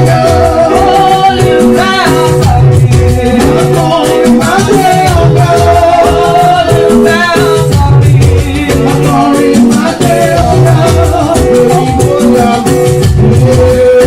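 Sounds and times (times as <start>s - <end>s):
busy percussive beat: 0.0s - 14.0s
voices singing praise music: 0.0s - 14.0s.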